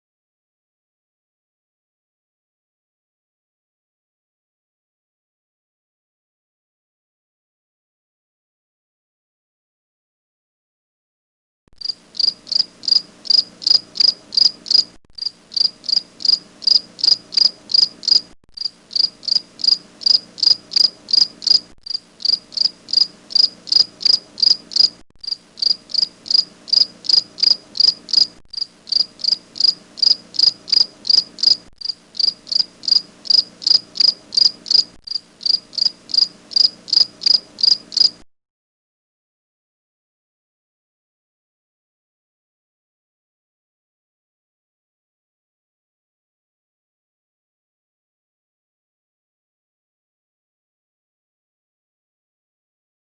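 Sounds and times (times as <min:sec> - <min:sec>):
cricket chirping: 0:11.8 - 0:38.2.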